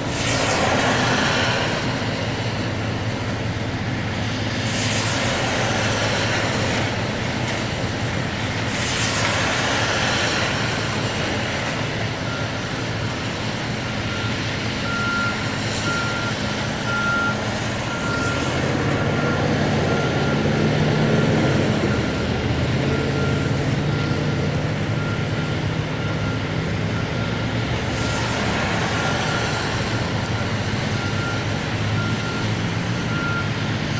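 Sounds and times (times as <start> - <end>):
diesel machinery engine: 0.0 - 33.9
backup alarm beeping: 14.1 - 18.4, 19.0 - 28.5, 29.1 - 33.6.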